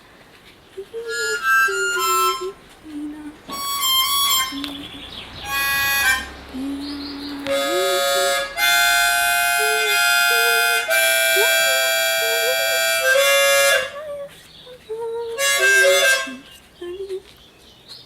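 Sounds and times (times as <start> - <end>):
soft wavering melody: 0.8 - 14.3
harmonica playing chords: 0.9 - 2.6, 3.5 - 14.2, 15.4 - 16.4.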